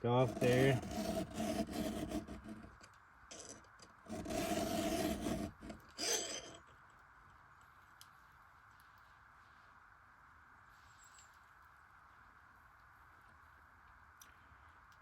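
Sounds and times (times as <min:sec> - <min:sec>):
file scraping metal: 0:00.0 - 0:06.6.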